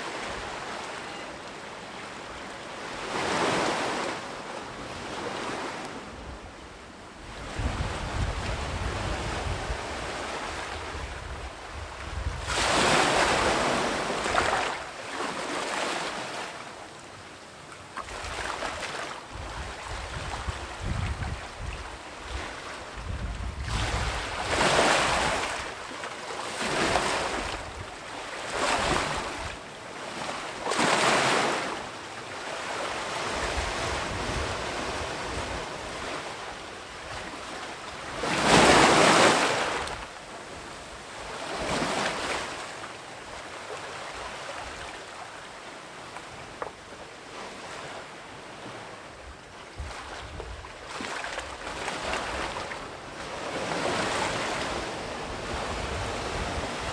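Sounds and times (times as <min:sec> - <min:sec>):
sea waves crashing on shore: 0:00.0 - 0:56.9.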